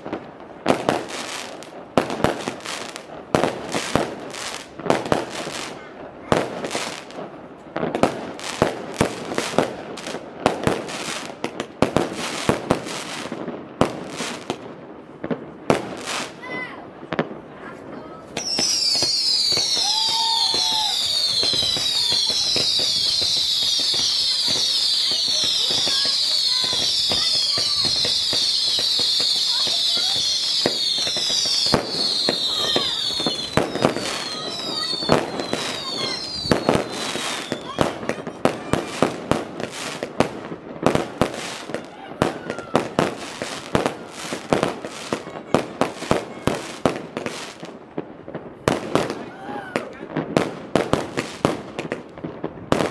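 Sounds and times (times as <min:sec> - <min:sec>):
fireworks crackling and popping: 0:00.0 - 0:52.9
firework whistles: 0:18.3 - 0:40.0.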